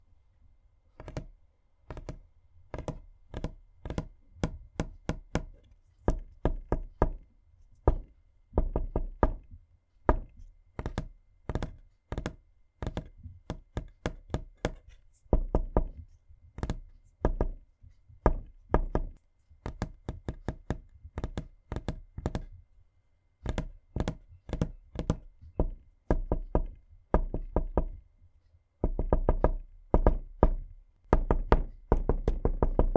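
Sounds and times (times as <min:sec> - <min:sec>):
knuckles knocking on wood: 0:01.0 - 0:07.2, 0:07.8 - 0:09.5, 0:10.1 - 0:16.0, 0:16.6 - 0:17.6, 0:18.2 - 0:22.6, 0:23.4 - 0:28.0, 0:28.8 - 0:32.9.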